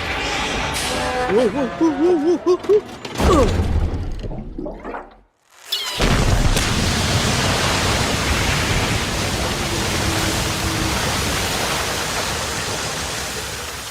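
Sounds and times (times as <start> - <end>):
loud rushing roar: 7.0 - 13.1.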